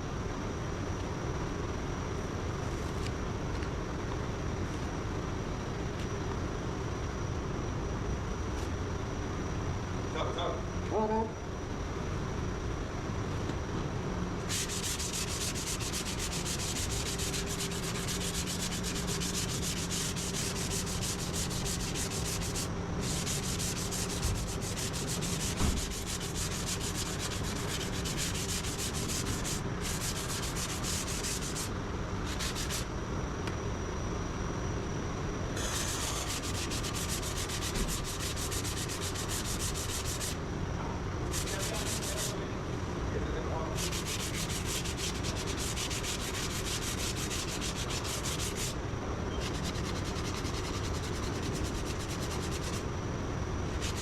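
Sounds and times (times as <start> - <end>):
sanding body filler: 14.4 - 32.9, 35.6 - 40.4, 41.3 - 42.4, 43.8 - 48.8, 49.4 - 52.8, 53.7 - 54.0.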